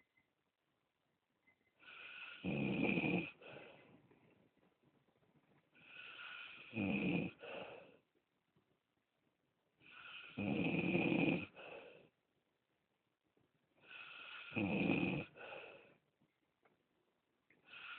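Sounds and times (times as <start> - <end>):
person snoring: 1.8 - 3.5, 5.8 - 7.9, 9.8 - 11.7, 13.8 - 15.8.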